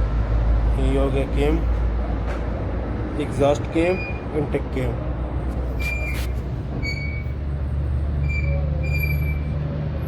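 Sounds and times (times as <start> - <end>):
short high squeaks: 5.8 - 7.4, 8.2 - 9.6.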